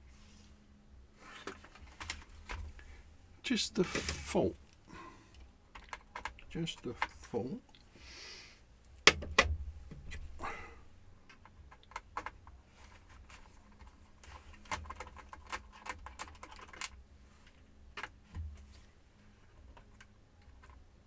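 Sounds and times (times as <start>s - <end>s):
clicks and taps of plastic case: 8.9s - 10.4s.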